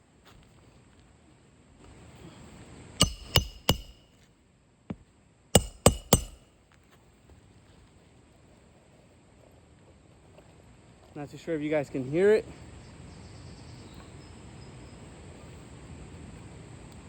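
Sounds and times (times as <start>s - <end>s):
hammer striking nails: 3.0s - 4.0s, 5.6s - 6.4s.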